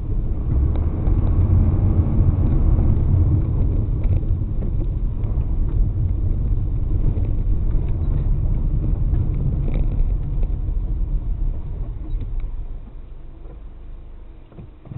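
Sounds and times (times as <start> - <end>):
car driving rumble from inside: 0.0 - 14.9.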